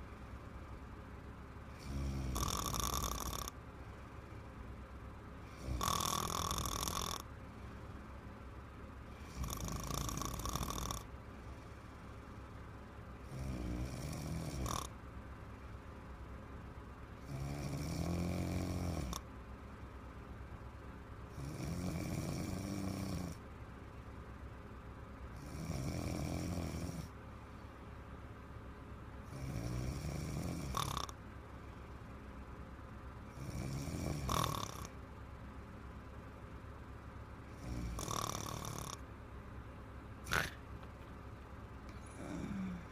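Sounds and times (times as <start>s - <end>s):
woman snoring: 1.7s - 3.6s, 5.5s - 7.2s, 9.2s - 11.1s, 13.3s - 14.9s, 17.2s - 19.2s, 21.4s - 23.4s, 25.4s - 27.1s, 29.3s - 31.2s, 33.4s - 34.9s, 37.6s - 39.0s, 42.0s - 42.9s.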